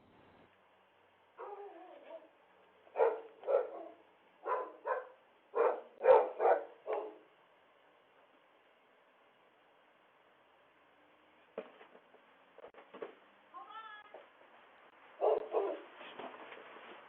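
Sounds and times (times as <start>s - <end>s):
dog barking: 1.4s - 1.7s, 2.9s - 7.3s, 15.2s - 15.9s
dog whining: 1.4s - 2.4s.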